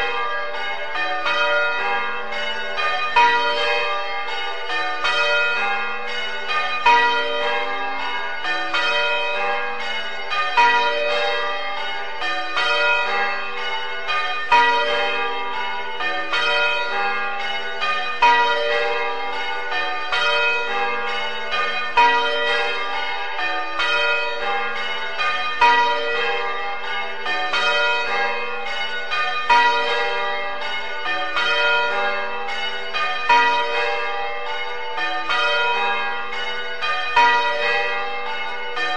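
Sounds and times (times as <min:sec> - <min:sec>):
church bells change ringing: 0:00.0 - 0:38.9.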